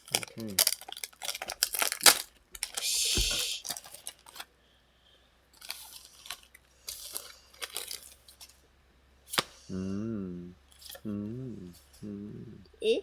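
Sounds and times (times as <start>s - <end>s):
cards rustling: 0.0s - 4.5s.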